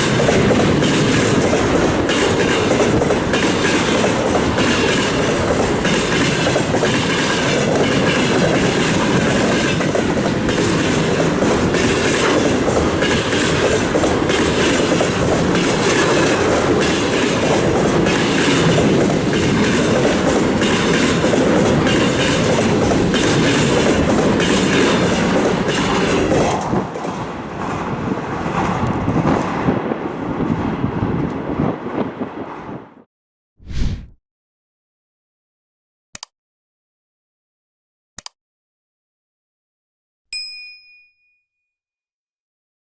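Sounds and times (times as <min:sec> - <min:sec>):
freight train wheels clickety-clack: 0:00.0 - 0:32.2.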